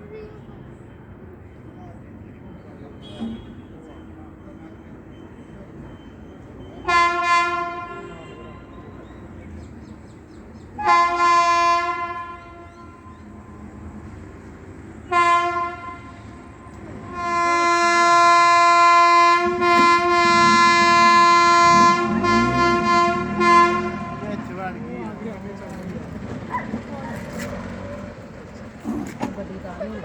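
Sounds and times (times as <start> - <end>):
locomotive horn blasts: 3.0 - 3.8, 6.8 - 9.0, 10.8 - 13.2, 15.0 - 24.6.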